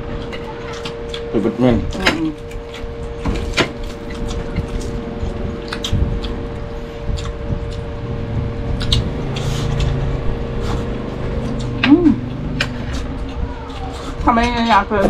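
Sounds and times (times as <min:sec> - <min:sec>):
person chewing: 0:00.0 - 0:14.2
steady hum: 0:00.0 - 0:15.0.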